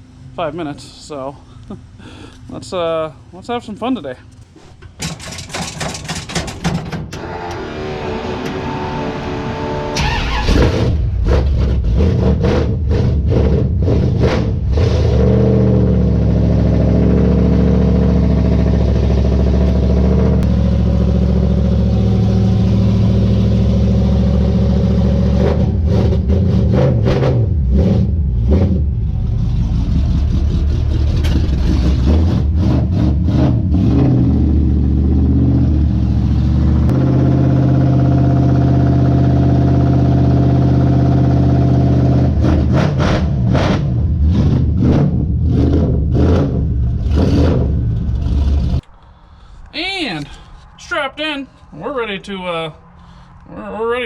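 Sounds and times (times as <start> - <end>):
car engine revving at idle: 14.7 - 48.8.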